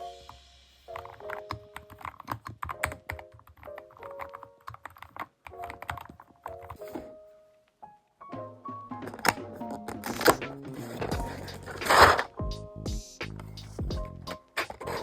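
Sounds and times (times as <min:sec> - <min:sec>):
keyboard keys clicking: 0:00.9 - 0:07.0
background music with held chords: 0:08.2 - 0:15.0.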